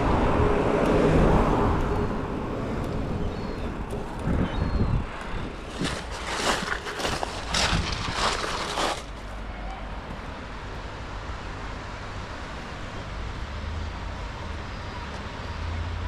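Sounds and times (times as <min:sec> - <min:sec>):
short rustles or knocks: 0:05.6 - 0:09.3.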